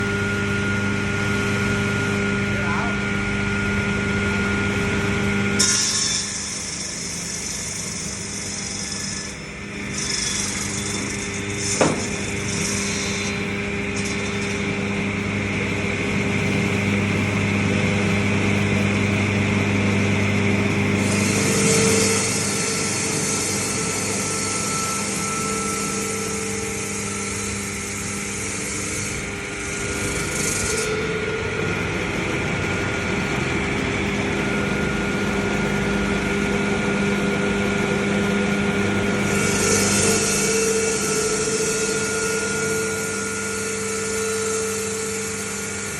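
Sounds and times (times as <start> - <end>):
ice-cutting machine humming: 0.0 - 45.9
saw blades cutting ice: 5.6 - 15.0, 20.7 - 31.2, 39.2 - 45.9
sharp knock: 11.8 - 12.1.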